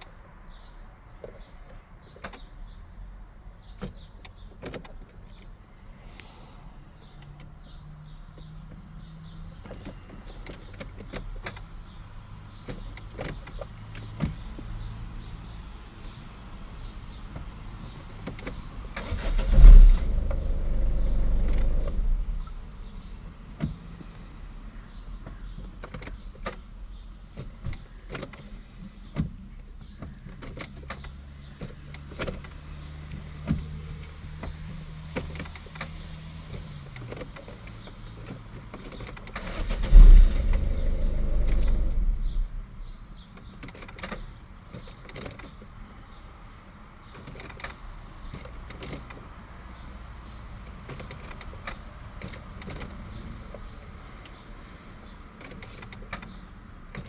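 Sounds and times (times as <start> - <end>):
engine low rumble: 2.6 - 56.9
starter motor whirring: 18.9 - 23.0, 39.0 - 43.8.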